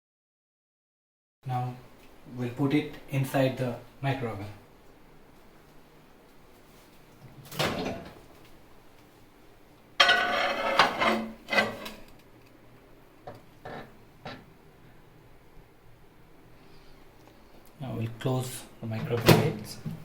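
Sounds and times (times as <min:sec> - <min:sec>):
ceramic plates scraping: 0:10.0 - 0:12.1.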